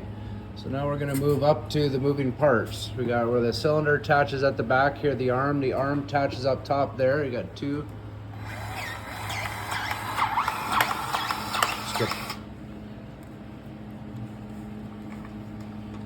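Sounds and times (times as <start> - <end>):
power grease gun whirring: 8.3 - 12.5.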